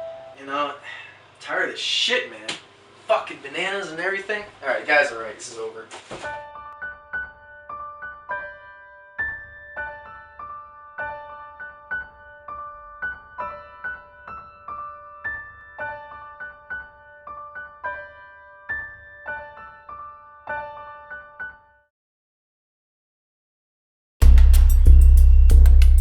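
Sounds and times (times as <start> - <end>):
gentle piano melody: 0.0 - 0.8, 6.3 - 21.9.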